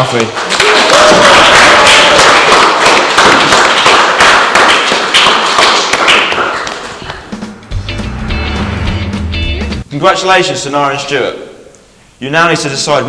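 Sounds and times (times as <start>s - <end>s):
audience clapping: 0.0s - 7.0s.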